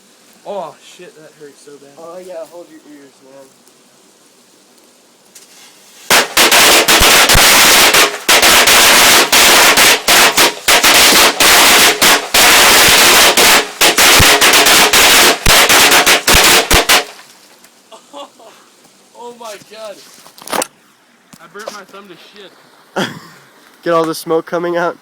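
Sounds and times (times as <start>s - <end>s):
firecrackers crackling bangs: 5.3s - 17.6s.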